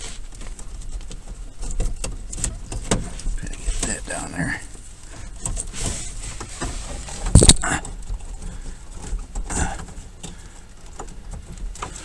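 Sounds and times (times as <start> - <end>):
clicks and knocks of parts handled: 5.1 - 12.0.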